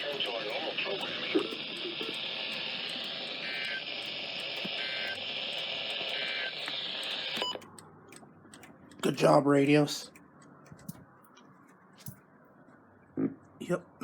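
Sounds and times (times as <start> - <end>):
radio static hiss: 0.0 - 7.5
two-tone digital data bursts: 0.0 - 7.6.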